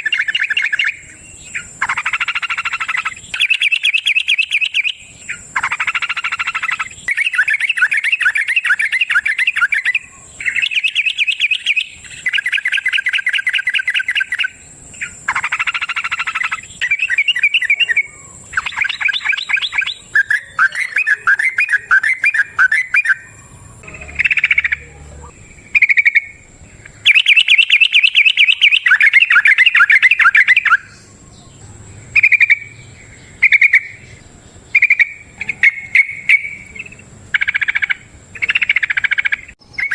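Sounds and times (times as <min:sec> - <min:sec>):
bulbul singing: 0:00.0 - 0:39.9.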